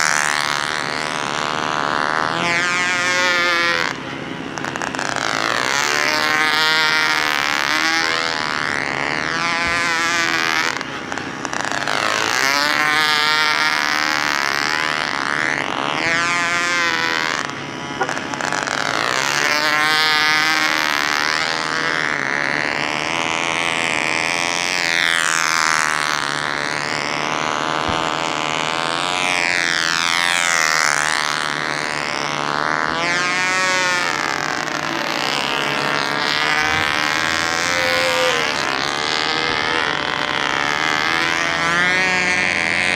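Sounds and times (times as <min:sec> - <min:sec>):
model plane engine buzzing: 0:00.0 - 0:42.9.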